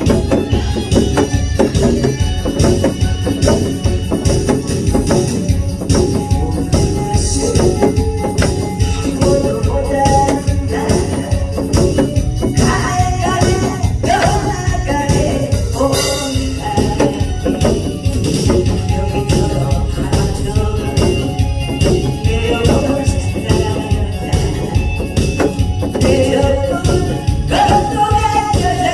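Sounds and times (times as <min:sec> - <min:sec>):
jingling tambourine: 0:00.0 - 0:28.9
person singing: 0:00.0 - 0:28.9
upbeat music with driving beat: 0:00.0 - 0:28.9.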